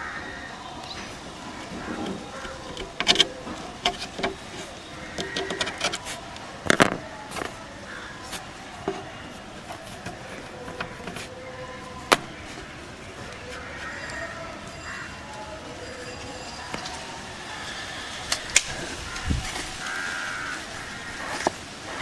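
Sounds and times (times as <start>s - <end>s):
hands handling objects: 0.8s - 14.8s, 19.4s - 22.0s.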